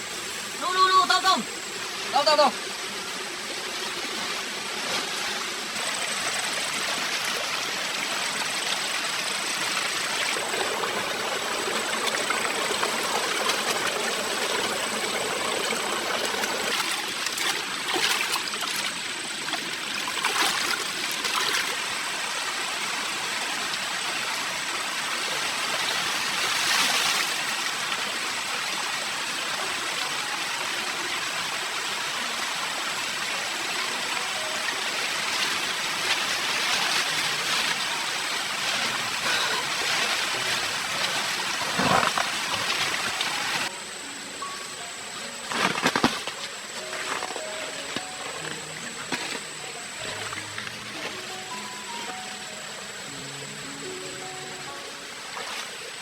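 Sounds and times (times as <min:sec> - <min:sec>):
stream rushing over rocks: 0:00.0 - 0:56.0
water splashing: 0:09.2 - 0:21.9, 0:34.4 - 0:43.7.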